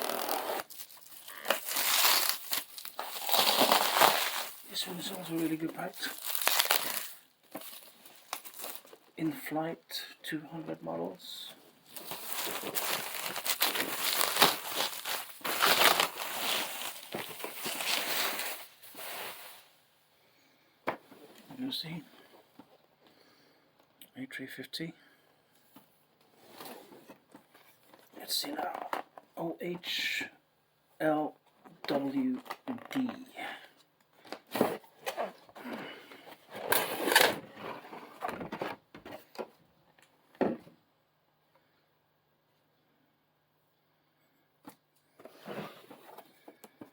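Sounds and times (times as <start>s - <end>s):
packing material crinkling: 0.0s - 9.2s, 11.8s - 19.6s
cardboard scrape: 36.5s - 38.7s, 45.2s - 46.2s.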